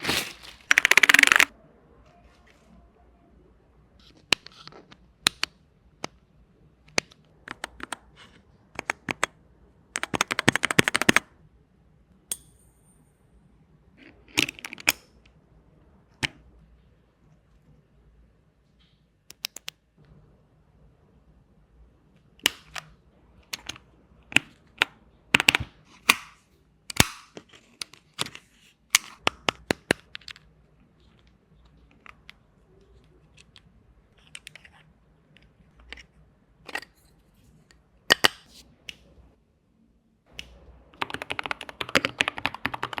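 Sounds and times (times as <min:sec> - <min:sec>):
fast typing on keyboard: 0:41.0 - 0:43.0.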